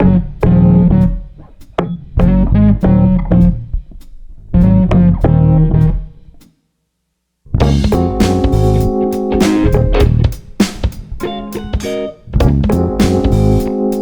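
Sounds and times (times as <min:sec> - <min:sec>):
electric guitar and bass music: 0:00.0 - 0:03.9, 0:04.5 - 0:06.3, 0:07.5 - 0:14.0.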